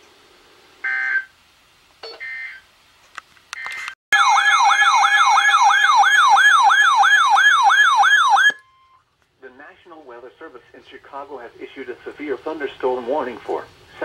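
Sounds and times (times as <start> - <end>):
weather radio alert siren: 4.1 - 8.6.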